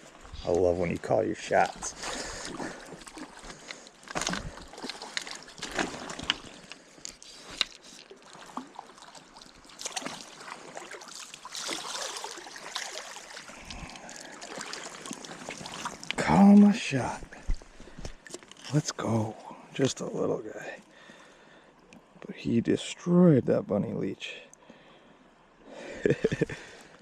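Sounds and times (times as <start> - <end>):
water sloshing and splashing: 0.0 - 20.0
running stream: 0.0 - 27.0.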